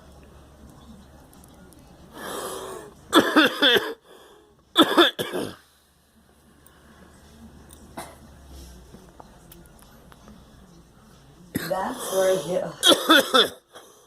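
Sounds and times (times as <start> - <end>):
soft breathy sound: 2.0 - 3.0
person coughing: 3.1 - 4.0, 4.8 - 5.6, 8.0 - 8.2, 11.6 - 13.9.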